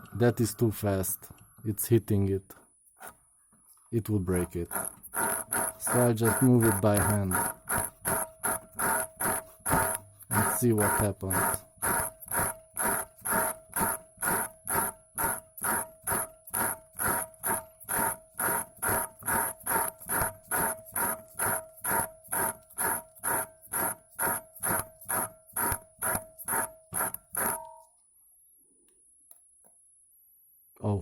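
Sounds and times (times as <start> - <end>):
cutting disc scraping glass: 4.4 - 27.7.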